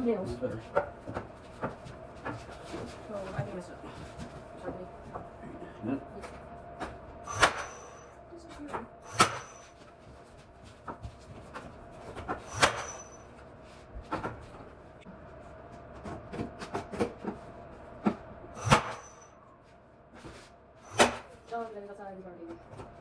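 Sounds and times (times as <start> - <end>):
high metallic ring: 9.0 - 9.8, 12.5 - 13.3, 18.6 - 19.4
hammer striking nails into wood: 20.9 - 21.3.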